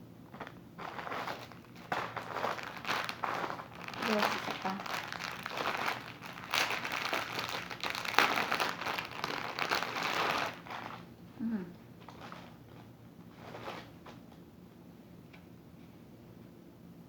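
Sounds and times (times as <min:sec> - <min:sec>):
packaging crinkling: 0:00.3 - 0:11.1, 0:12.1 - 0:13.9.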